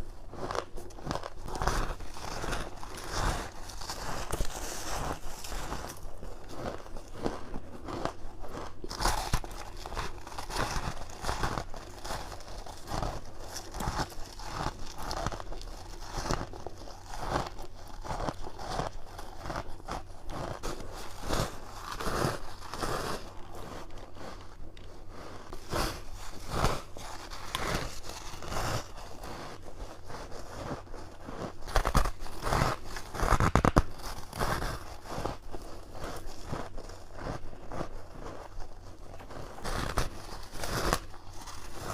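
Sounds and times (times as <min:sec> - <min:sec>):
ice crunching bites: 0:00.5 - 0:24.2.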